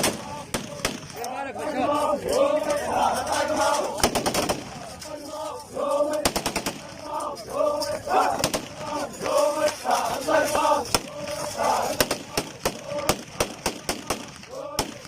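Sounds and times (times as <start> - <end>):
men chanting: 0.0 - 15.0
automatic gunfire: 4.0 - 4.7, 6.2 - 6.8, 12.0 - 15.0.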